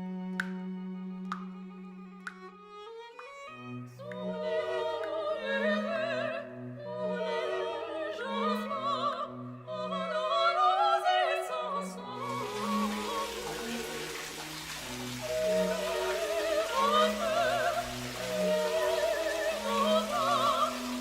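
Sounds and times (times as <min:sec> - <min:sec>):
operatic singing with vibrato: 0:04.0 - 0:21.0
orchestra playing: 0:12.2 - 0:21.0.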